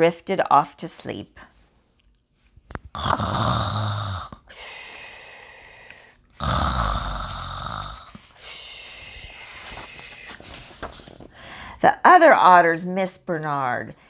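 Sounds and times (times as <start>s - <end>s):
person imitating snoring: 3.0s - 5.5s, 6.4s - 8.2s.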